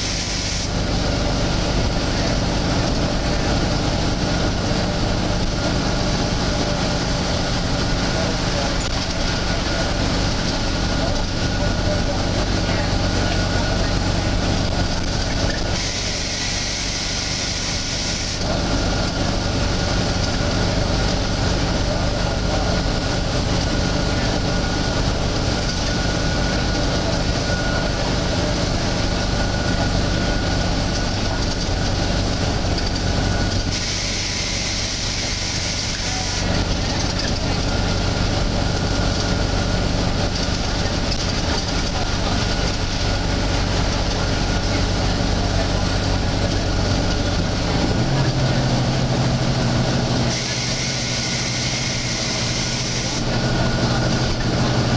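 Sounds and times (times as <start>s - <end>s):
bus engine running: 0.0s - 54.9s.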